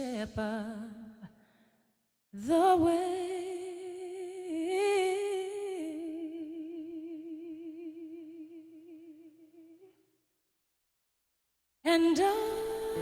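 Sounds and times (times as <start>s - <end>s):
woman singing a long note: 12.0s - 13.0s.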